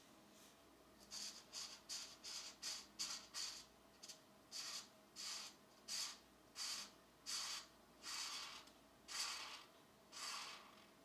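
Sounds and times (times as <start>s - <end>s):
pencil scratching on paper: 1.1s - 9.6s.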